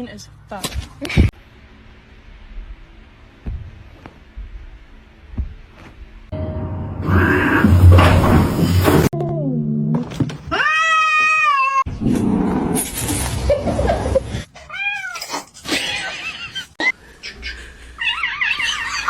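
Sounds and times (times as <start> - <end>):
cats meowing and yowling: 10.5 - 11.9, 14.6 - 16.3, 18.0 - 19.0.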